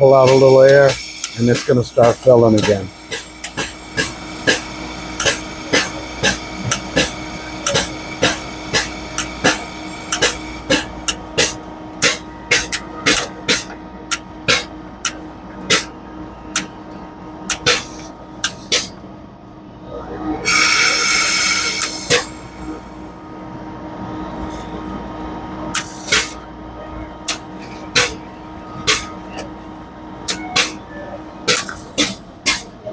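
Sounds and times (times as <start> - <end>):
machine humming: 0.0 - 18.8
loud hiss: 0.1 - 10.8.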